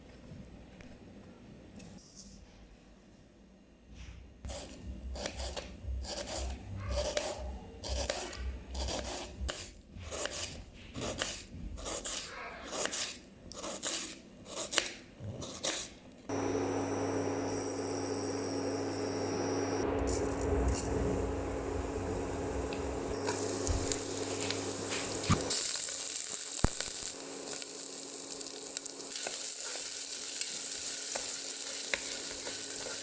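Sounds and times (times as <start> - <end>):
grating carrots: 4.5 - 16.0
low hum: 16.3 - 25.6
food sizzling in a pan: 23.1 - 33.0.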